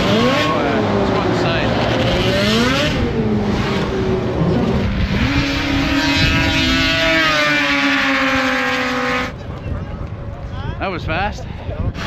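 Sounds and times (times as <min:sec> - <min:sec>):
snowmobile engines revving: 0:00.0 - 0:09.5.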